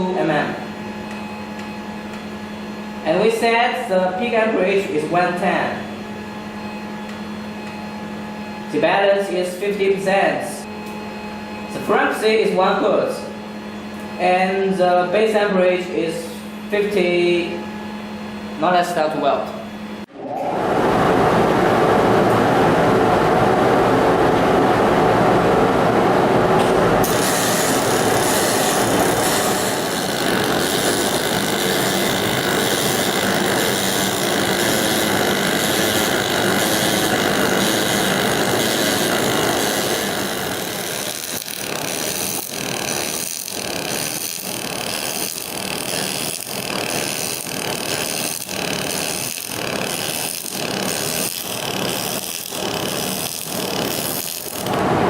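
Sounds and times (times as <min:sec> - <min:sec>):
welding arc: 0:26.6 - 0:54.9.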